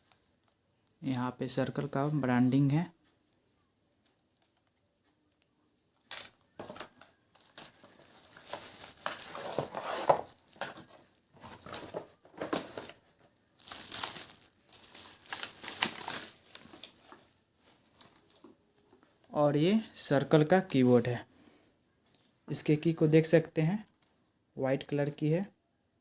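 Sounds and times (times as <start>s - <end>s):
packaging crinkling and rustling: 5.9s - 19.0s.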